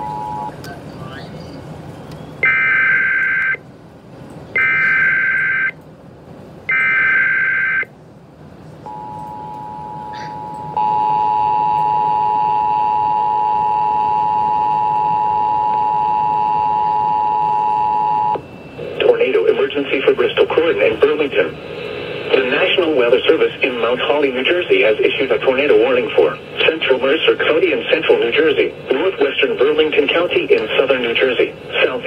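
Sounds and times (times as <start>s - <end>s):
two-tone attention signal: 4.6s - 5.8s, 6.7s - 7.9s, 8.9s - 18.8s.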